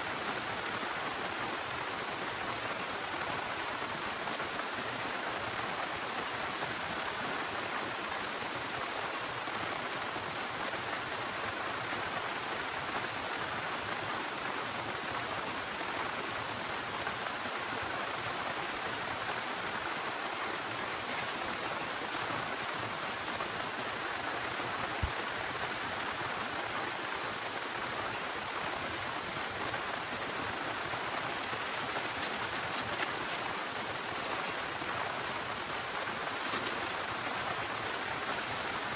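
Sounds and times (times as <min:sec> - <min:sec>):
faint ticks: 0:36.3 - 0:38.9.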